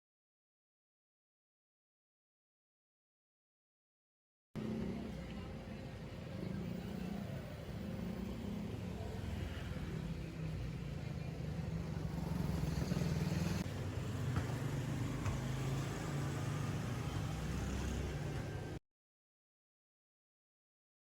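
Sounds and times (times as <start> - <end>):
vehicle engine hum: 4.6 - 18.8.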